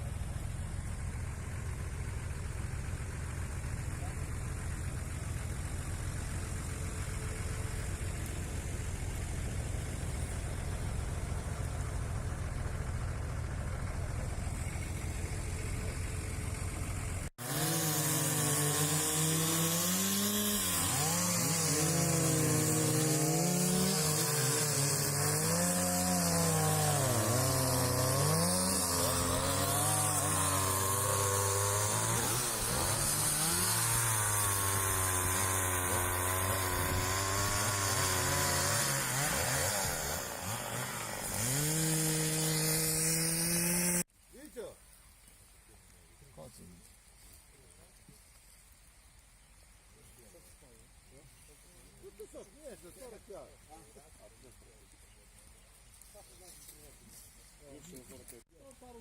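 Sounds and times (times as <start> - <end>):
chainsaw cutting wood: 0.0 - 13.1, 14.1 - 44.1
vehicle engine idling: 0.0 - 17.3.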